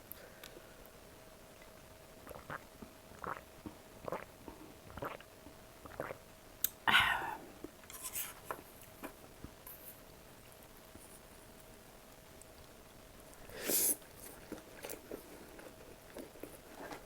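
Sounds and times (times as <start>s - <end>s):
chewing and mouth sounds: 2.3s - 2.6s.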